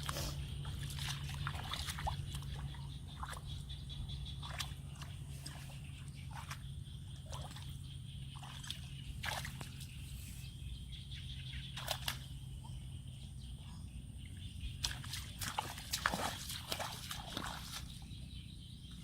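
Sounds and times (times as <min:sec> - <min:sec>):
shallow water splashing: 0:00.0 - 0:03.6, 0:04.3 - 0:10.4, 0:14.7 - 0:18.1
steady low hum: 0:00.0 - 0:19.0.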